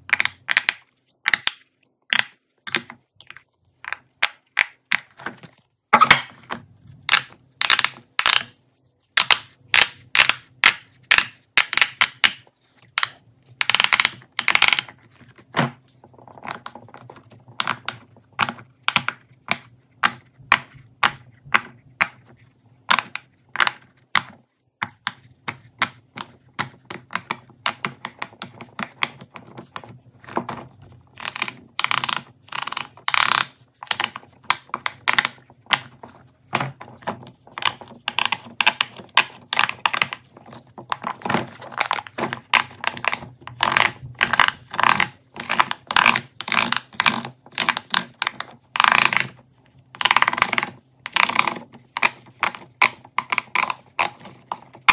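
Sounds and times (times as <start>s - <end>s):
fidget toys clicking and popping: 0.0s - 2.9s, 7.0s - 8.6s, 9.2s - 14.9s, 31.2s - 36.0s, 37.6s - 40.2s.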